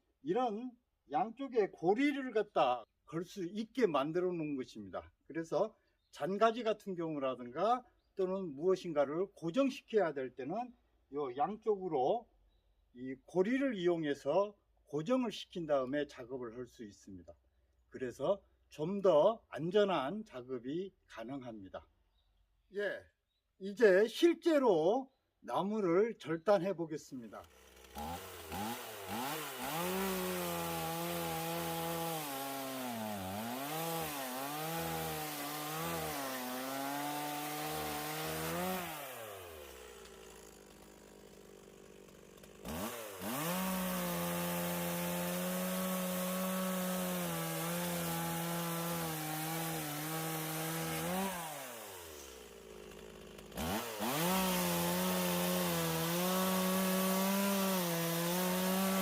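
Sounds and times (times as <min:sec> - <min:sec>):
chainsaw cutting logs: 0:27.2 - 0:59.0.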